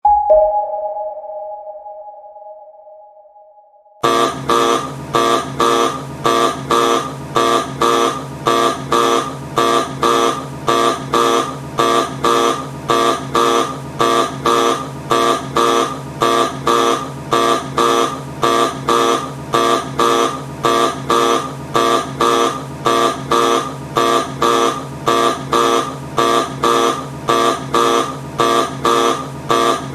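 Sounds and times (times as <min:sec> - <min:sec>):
tone: 0:00.0 - 0:04.0
alarm buzzer pulsing: 0:04.0 - 0:29.9.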